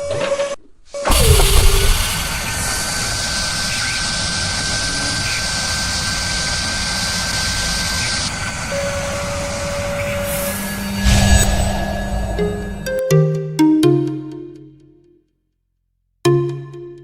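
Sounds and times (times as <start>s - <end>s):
air hiss: 1.0s - 8.5s.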